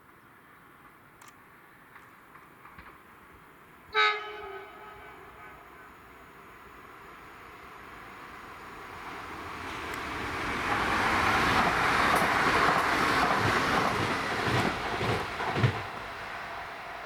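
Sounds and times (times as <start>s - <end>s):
train passing: 3.6s - 17.0s
low thumps from train wheels: 9.6s - 16.3s.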